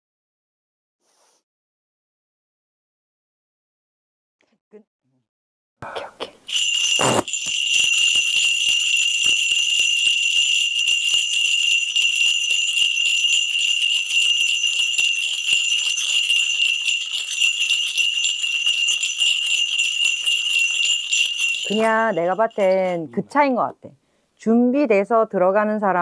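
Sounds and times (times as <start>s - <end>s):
ritual bell rattle jingling: 6.5s - 23.3s.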